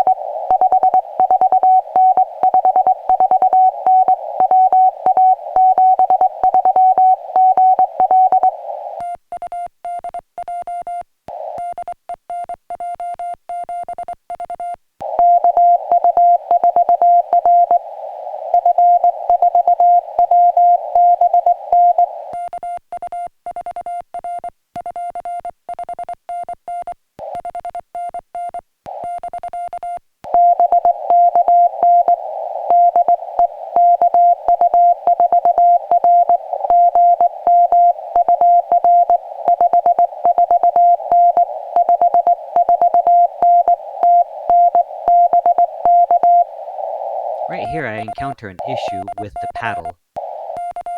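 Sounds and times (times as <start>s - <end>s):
receiver hiss: 0.0s - 3.1s, 17.3s - 22.3s, 31.0s - 50.6s
morse code beeping tone: 47.4s - 49.9s.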